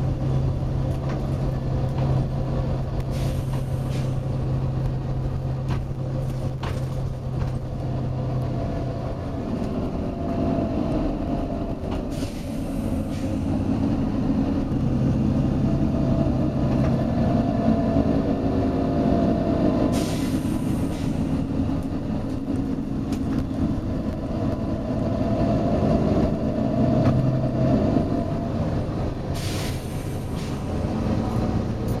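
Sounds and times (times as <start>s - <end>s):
bus engine running: 0.0s - 32.0s
compressed air hiss: 3.1s - 4.2s, 12.1s - 13.5s, 19.9s - 21.3s, 29.4s - 30.8s.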